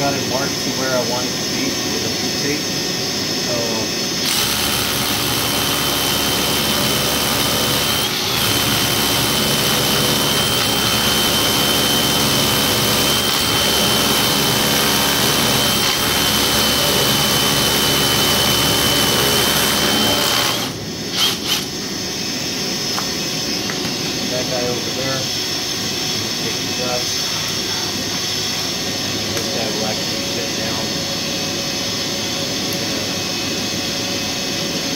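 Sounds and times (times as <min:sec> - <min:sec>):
dust extraction vacuum: 0:00.0 - 0:34.9
rotary hammer drilling concrete: 0:03.6 - 0:21.8, 0:24.3 - 0:30.9.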